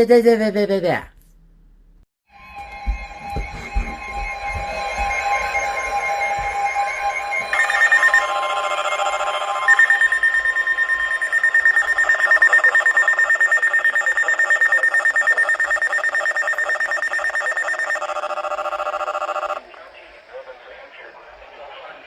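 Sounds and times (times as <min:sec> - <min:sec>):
steady high tone: 0:02.3 - 0:19.6
rapidly pulsing beep: 0:02.8 - 0:19.6.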